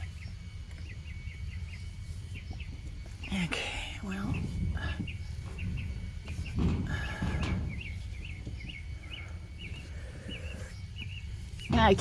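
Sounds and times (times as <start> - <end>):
small bird chirping: 0.0 - 12.0
handling noise rumble: 2.4 - 12.0.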